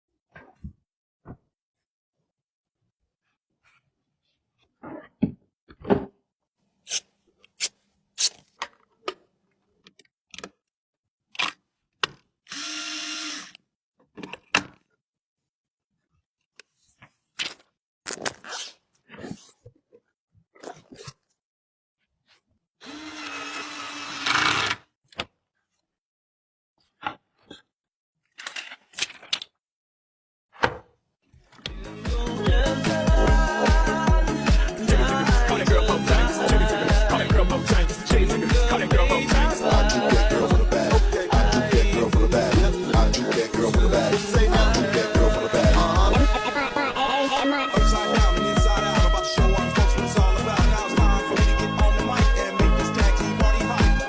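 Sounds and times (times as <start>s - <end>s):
electric screwdriver whirring: 12.5s - 13.6s, 22.8s - 24.8s.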